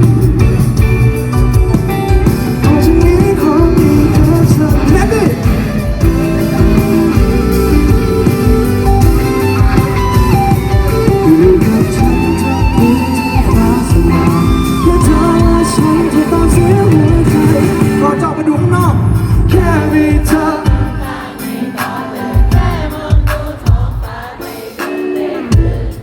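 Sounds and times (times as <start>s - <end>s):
live pop-rock band: 0.0s - 26.0s
person singing: 2.2s - 9.0s, 9.6s - 18.6s, 19.3s - 26.0s.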